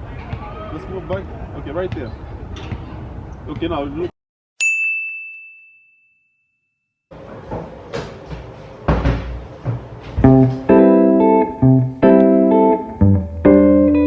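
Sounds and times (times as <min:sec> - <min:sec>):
bright ding: 0:04.6 - 0:06.9
knocks: 0:07.5 - 0:10.8
plucked guitar music: 0:10.2 - 0:14.0.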